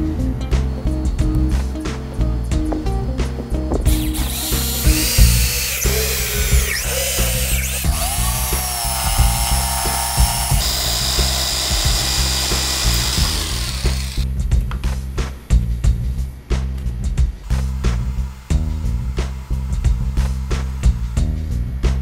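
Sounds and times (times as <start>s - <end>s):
background music with bass line: 0.0s - 22.0s
power tool whining: 3.8s - 14.2s, 17.4s - 21.2s.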